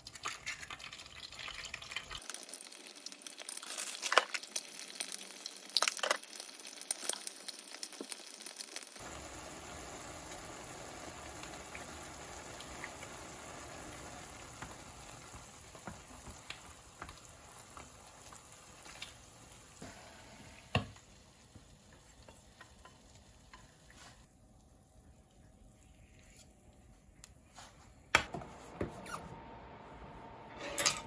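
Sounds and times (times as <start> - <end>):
food sizzling in a pan: 1.0 - 25.1.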